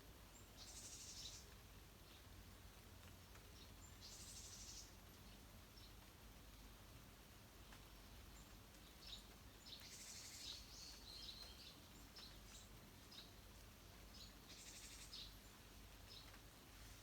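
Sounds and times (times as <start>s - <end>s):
small birds chirping: 3.4s - 6.0s, 7.6s - 16.4s.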